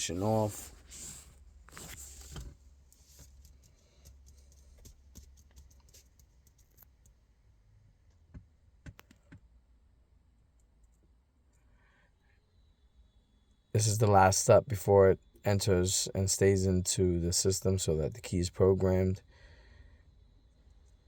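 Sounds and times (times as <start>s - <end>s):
light clicks and taps: 2.4s - 7.2s.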